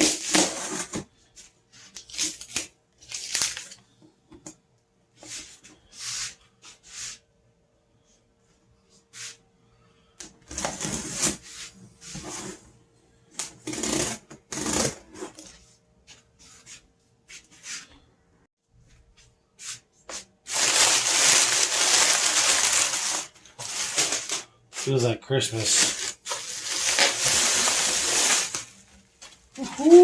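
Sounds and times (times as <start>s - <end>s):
cardboard rustling and scraping: 0.0s - 2.2s, 10.4s - 12.7s, 13.4s - 17.9s, 20.1s - 29.0s
packing tearing: 2.0s - 3.8s, 20.5s - 24.9s, 25.7s - 28.7s.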